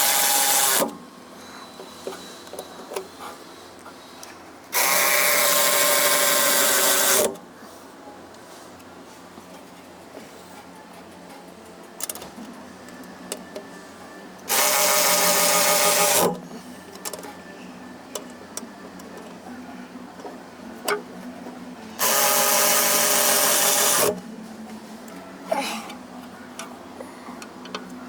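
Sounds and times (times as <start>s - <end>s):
power tool driving fasteners: 0.0s - 1.0s, 4.7s - 7.4s, 14.5s - 16.4s, 22.0s - 24.2s.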